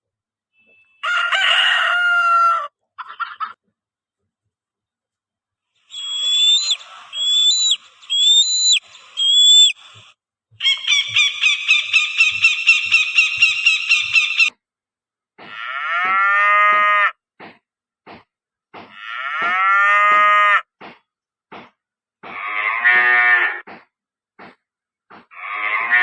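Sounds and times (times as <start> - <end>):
animal calls: 5.9 - 14.5.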